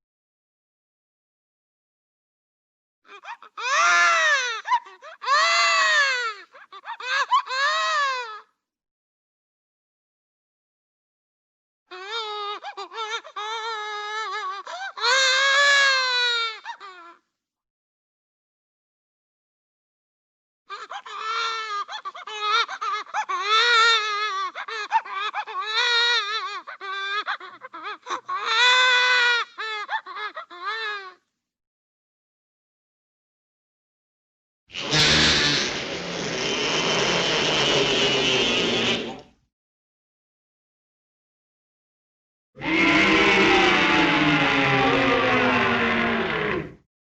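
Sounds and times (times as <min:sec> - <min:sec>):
high-pitched wailing cry: 0:34.8 - 0:39.2, 0:42.6 - 0:46.8.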